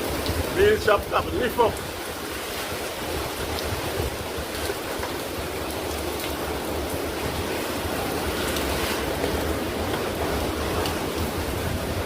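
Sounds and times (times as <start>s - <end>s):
wind and heavy rain rushing: 0.0s - 12.0s
wind buffeting microphone: 0.0s - 12.0s.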